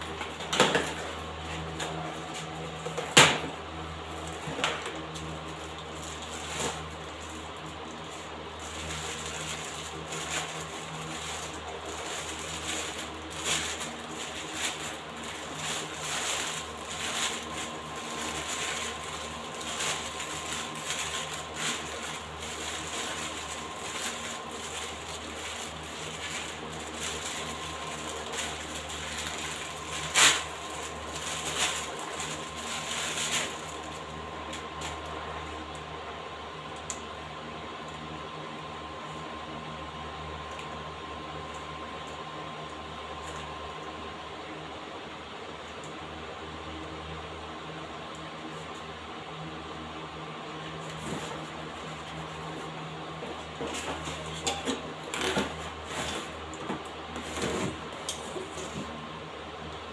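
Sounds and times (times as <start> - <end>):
steady hum: 0.0 - 59.9
welding arc crackling and sizzling: 4.1 - 35.7.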